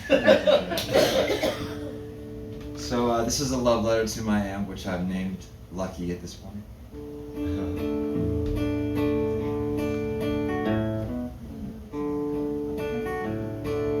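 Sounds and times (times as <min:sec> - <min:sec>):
acoustic guitar strumming chords: 0:00.9 - 0:03.4, 0:06.9 - 0:14.0.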